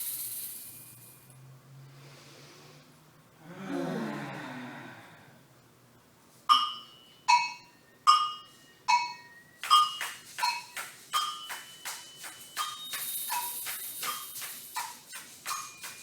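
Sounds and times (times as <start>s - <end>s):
breathy sound: 3.4s - 5.4s
sharp percussive strikes ringing: 6.5s - 16.0s.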